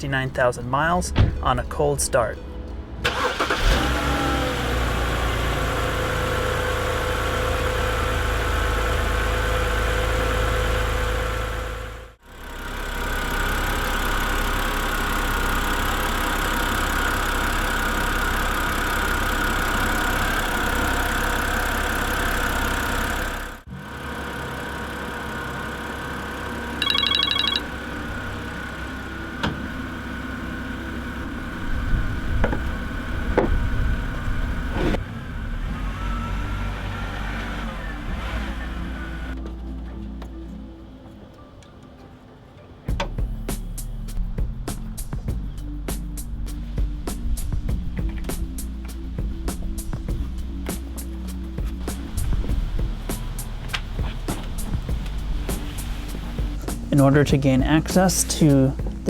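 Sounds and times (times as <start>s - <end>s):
car engine idling with ticking: 2.6s - 34.7s, 47.9s - 59.0s
short electronic beep: 26.8s - 27.7s.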